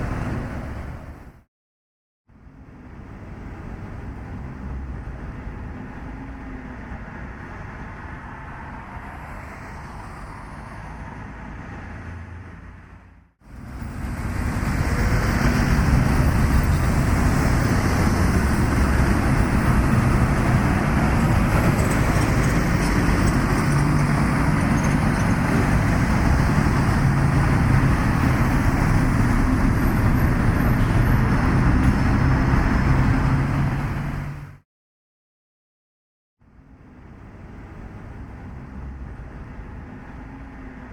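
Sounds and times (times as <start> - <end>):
wind and road noise: 0.0 - 1.5, 2.3 - 34.6, 36.4 - 40.9.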